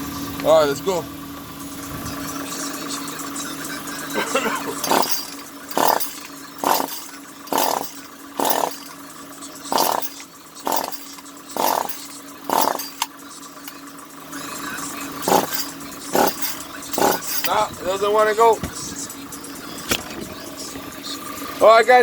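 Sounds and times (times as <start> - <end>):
chainsaw recoil starter pulls: 4.7 - 9.0, 9.7 - 13.8, 15.2 - 18.1.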